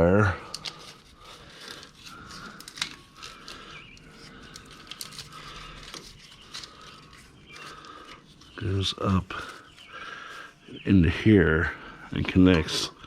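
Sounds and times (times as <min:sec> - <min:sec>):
clicks and rustles of wiring: 0:00.0 - 0:09.9.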